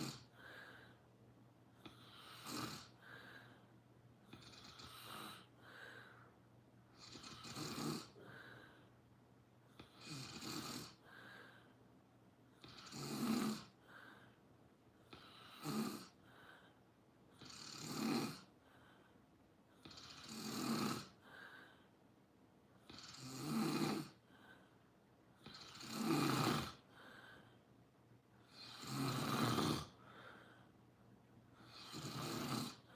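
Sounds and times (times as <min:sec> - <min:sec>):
person snoring: 0:00.0 - 0:01.0, 0:01.8 - 0:03.6, 0:04.3 - 0:06.0, 0:06.9 - 0:08.9, 0:09.8 - 0:11.6, 0:12.6 - 0:14.0, 0:15.1 - 0:16.2, 0:17.4 - 0:18.5, 0:19.8 - 0:21.3, 0:22.8 - 0:24.2, 0:25.4 - 0:27.4, 0:28.4 - 0:30.5, 0:31.6 - 0:32.9.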